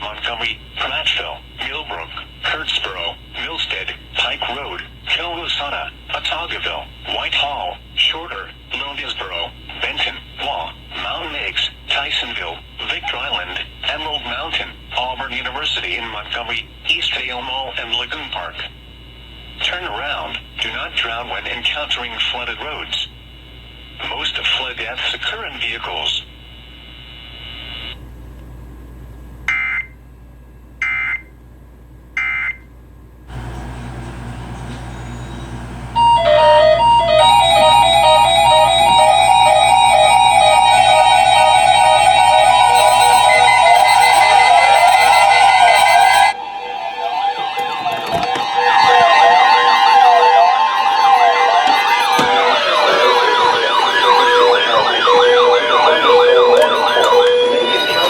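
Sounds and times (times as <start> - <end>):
electronic sirens yelping: 33.3 - 58.0
digital data tone bursts: 35.0 - 58.0.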